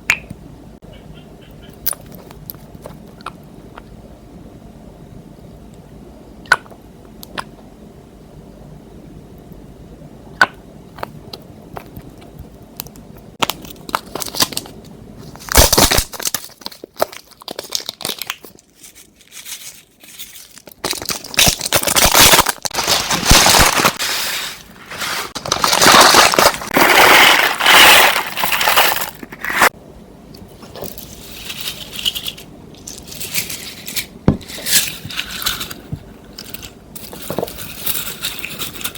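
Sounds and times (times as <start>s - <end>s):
slime crackling and crunching: 15.4s - 19.7s, 20.4s - 29.8s.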